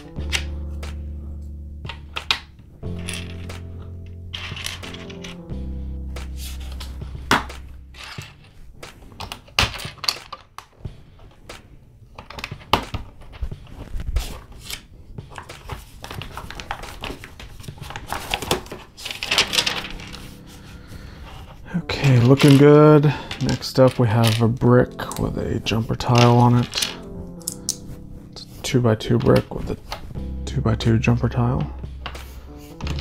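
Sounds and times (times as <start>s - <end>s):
plastic pieces clicking and rattling: 4.3s - 5.4s, 8.0s - 8.4s, 9.2s - 10.8s, 12.2s - 13.6s, 14.6s - 20.2s, 22.0s - 25.3s, 26.2s - 27.8s.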